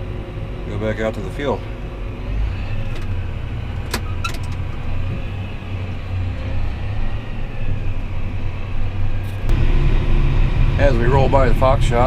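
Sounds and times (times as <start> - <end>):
tractor engine hum: 0.0 - 12.0.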